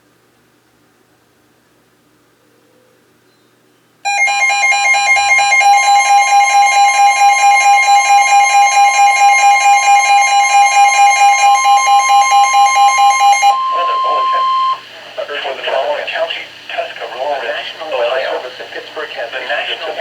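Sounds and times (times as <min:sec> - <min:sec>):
fast pulsing beep: 0:04.1 - 0:14.8
steady warning tone: 0:04.1 - 0:20.0.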